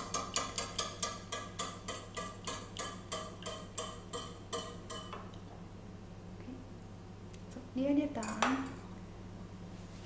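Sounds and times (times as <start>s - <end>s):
egg mixture beaten in bowl: 0.0s - 5.2s
utensil clicking against bowl: 0.0s - 5.2s.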